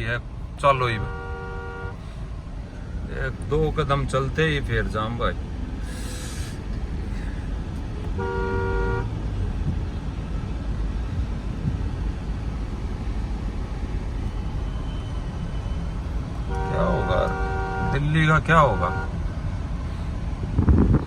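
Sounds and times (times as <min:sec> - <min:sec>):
low rumble of slow traffic: 0:00.0 - 0:21.0
car horn toot: 0:00.6 - 0:02.2, 0:08.0 - 0:10.0, 0:16.4 - 0:19.3.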